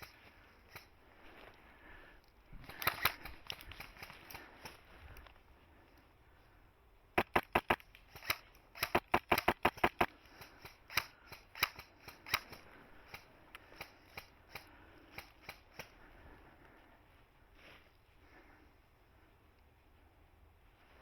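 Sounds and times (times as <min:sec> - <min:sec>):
airsoft guns firing: 0:02.6 - 0:04.8, 0:07.2 - 0:15.9.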